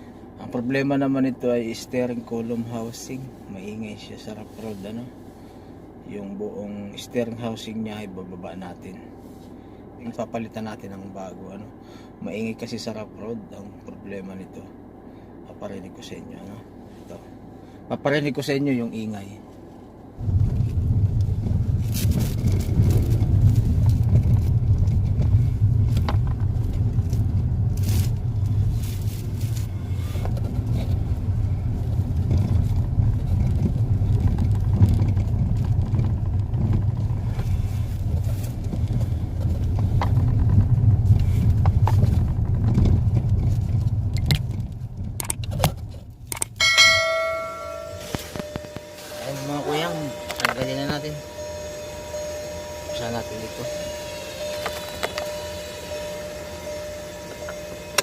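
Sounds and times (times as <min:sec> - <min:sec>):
road rumble inside car: 0:00.0 - 0:58.0
short ringing tones: 0:46.6 - 0:58.0.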